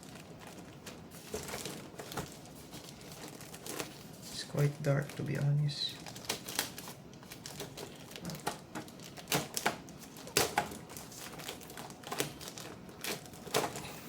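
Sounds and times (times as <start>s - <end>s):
packaging being handled: 0.0s - 14.0s.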